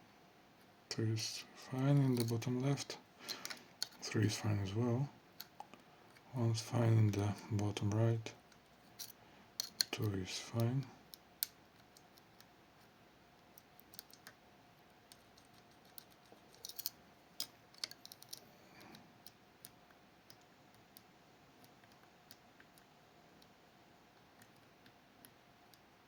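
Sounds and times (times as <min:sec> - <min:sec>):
lock picks clicking in lock: 0:15.9 - 0:18.4.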